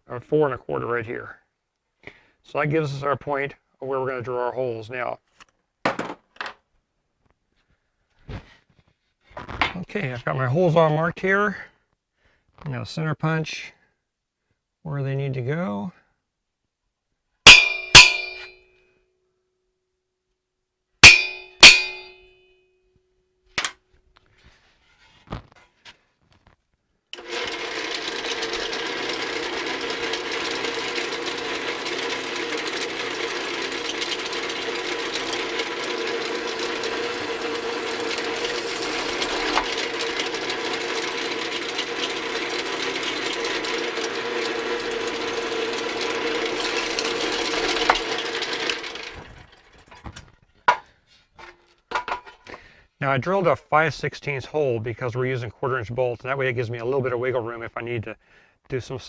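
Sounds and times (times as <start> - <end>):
hammer striking metal punch: 17.5 - 18.6, 21.0 - 22.3
electric drill drilling metal: 27.2 - 50.0.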